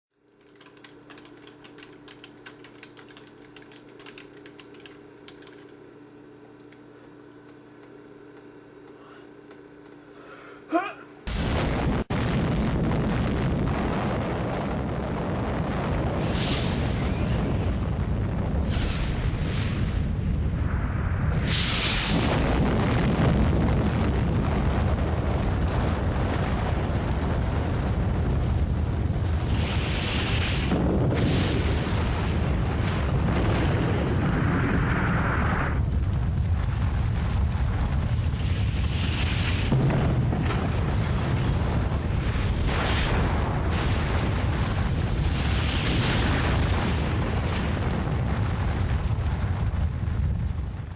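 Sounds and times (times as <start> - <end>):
deep explosion rumble: 11.3 - 50.9.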